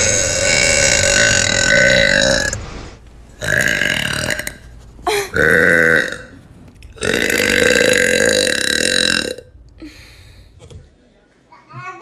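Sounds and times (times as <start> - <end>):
woman burping: 3.4 - 6.4, 7.0 - 10.1.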